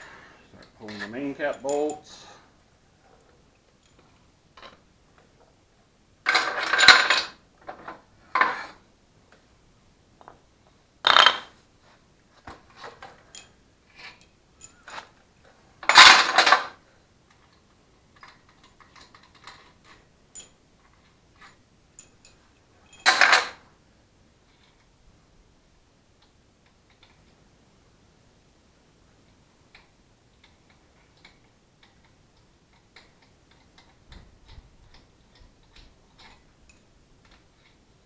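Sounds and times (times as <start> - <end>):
bolts and tools clattering metal: 0.8 - 2.1, 6.3 - 8.8, 11.1 - 11.6, 15.8 - 16.8, 18.2 - 23.6
light metallic clinks: 0.8 - 2.2, 13.2 - 15.0.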